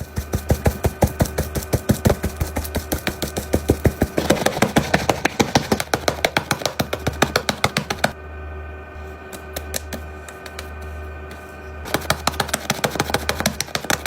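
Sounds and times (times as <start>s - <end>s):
fast percussive beat: 0.0s - 8.2s, 11.9s - 14.0s
held tones and low drone: 0.0s - 14.0s.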